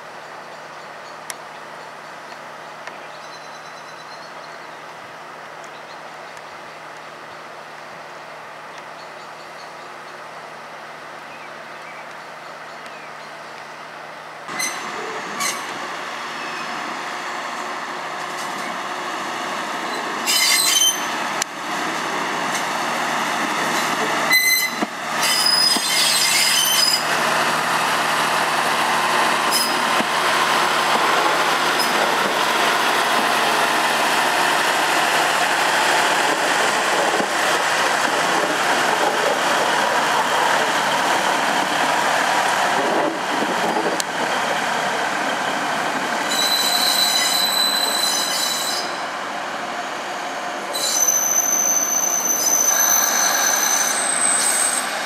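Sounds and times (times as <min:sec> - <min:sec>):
diesel train passing: 0:00.1 - 0:55.0
shrill squealing: 0:19.9 - 0:21.1, 0:24.3 - 0:27.1, 0:46.3 - 0:49.0, 0:50.7 - 0:54.9.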